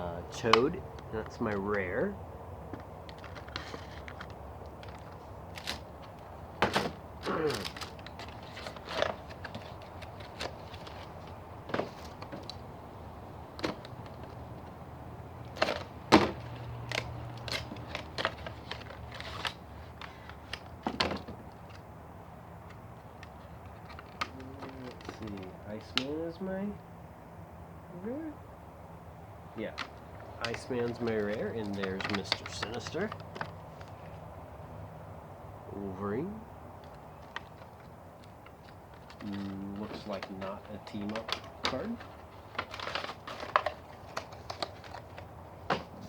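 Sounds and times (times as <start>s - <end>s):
packaging rustling: 7.3s - 12.6s, 15.4s - 21.8s, 29.7s - 34.2s, 36.8s - 46.0s
plastic figures clicking: 29.7s - 34.0s, 36.8s - 45.3s.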